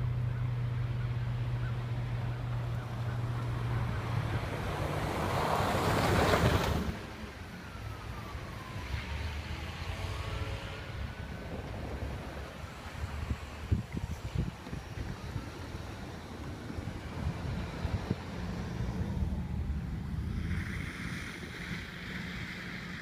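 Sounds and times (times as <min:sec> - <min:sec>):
low engine hum: 0:00.0 - 0:23.0
outdoor noise: 0:00.0 - 0:23.0.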